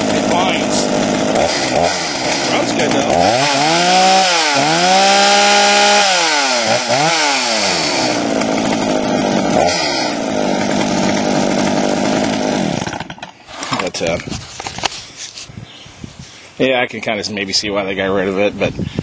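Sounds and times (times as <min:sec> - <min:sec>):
chainsaw revving: 0:00.0 - 0:13.3.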